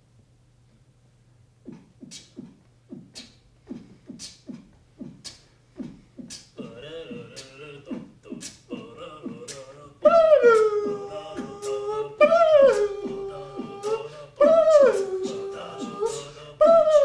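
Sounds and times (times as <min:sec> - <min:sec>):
percussion groove of low thumps: 0:09.2 - 0:16.1.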